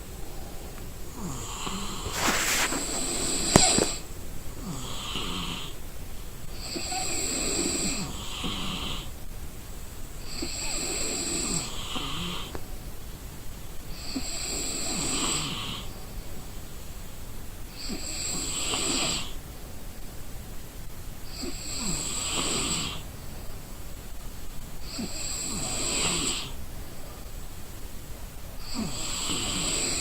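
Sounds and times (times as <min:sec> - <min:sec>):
person snoring: 0:28.6 - 0:30.0.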